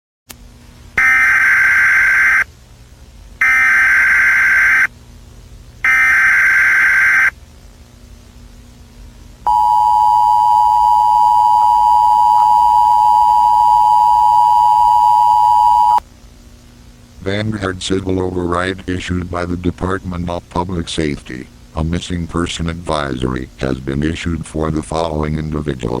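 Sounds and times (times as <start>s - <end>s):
digital data bursts: 3.4s - 4.9s, 5.8s - 7.3s
two-tone attention signal: 9.5s - 16.0s.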